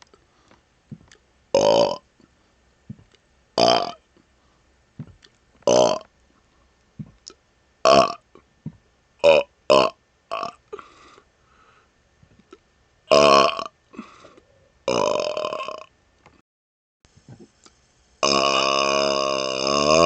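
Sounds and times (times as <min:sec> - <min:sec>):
man burping: 0:01.6 - 0:02.0, 0:03.6 - 0:04.0, 0:05.7 - 0:06.1, 0:07.9 - 0:08.3, 0:09.2 - 0:10.9, 0:13.1 - 0:14.3, 0:14.9 - 0:15.9, 0:18.2 - 0:20.0.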